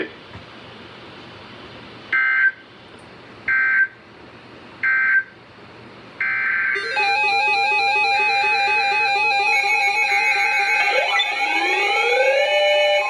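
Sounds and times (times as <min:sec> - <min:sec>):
digital data tone bursts: 0:06.8 - 0:13.0
stepping electronic tone melody: 0:06.8 - 0:13.0.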